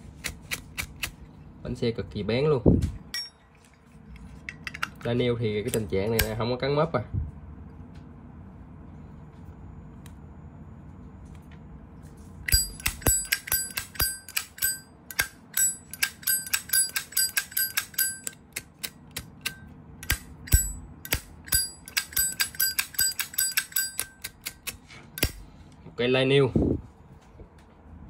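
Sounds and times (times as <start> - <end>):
lighter lid clinking open and shut: 12.5 - 25.4.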